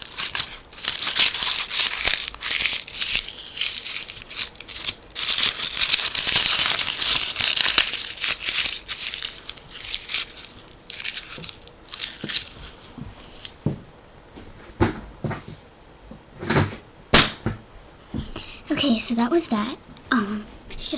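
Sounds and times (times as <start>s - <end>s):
paper being crumpled: 0.0s - 13.5s.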